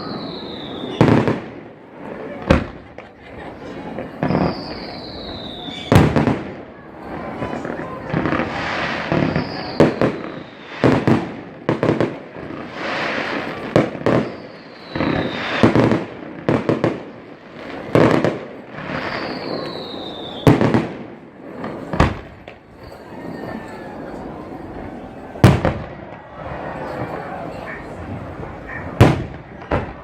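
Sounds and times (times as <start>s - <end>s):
firework whistle falling in pitch: 0.0s - 1.2s, 4.3s - 6.0s, 9.0s - 10.8s, 14.1s - 15.6s, 18.9s - 20.6s
fireworks bangs: 0.0s - 30.0s.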